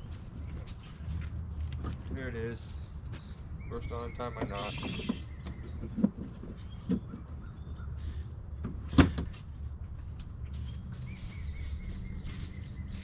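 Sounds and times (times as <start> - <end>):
faint bird chirps: 2.8 - 5.8.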